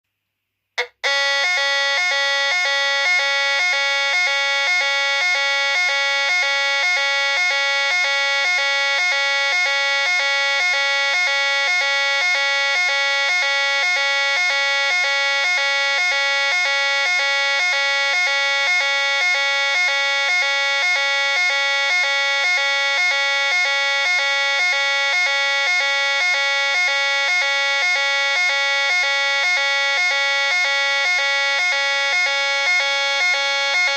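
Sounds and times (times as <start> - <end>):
buzzy two-tone siren: 0.8 - 33.9.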